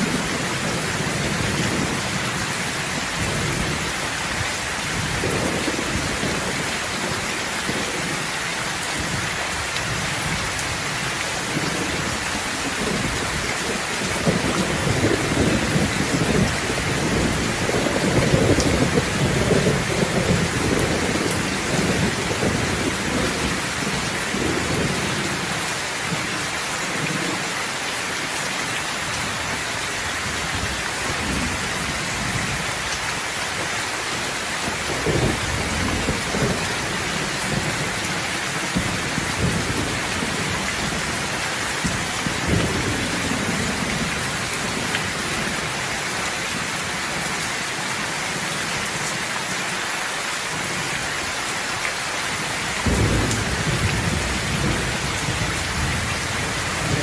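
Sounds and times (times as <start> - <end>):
thunder rumbling: 0.0 - 8.2, 9.0 - 27.4, 34.6 - 45.8, 52.7 - 57.0
heavy rain falling: 0.0 - 57.0.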